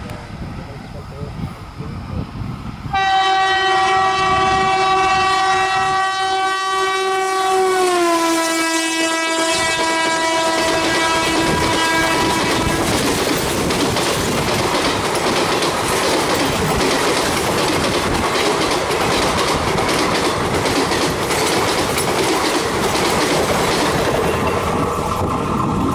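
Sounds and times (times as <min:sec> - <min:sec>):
rush of air: 0:00.0 - 0:02.9
train wheels clattering over rails: 0:10.0 - 0:25.9.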